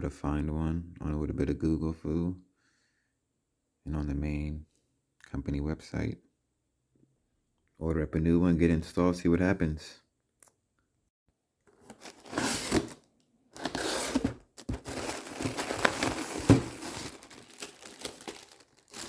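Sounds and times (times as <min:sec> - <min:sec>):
packaging tearing and crinkling: 0:11.8 - 0:19.0.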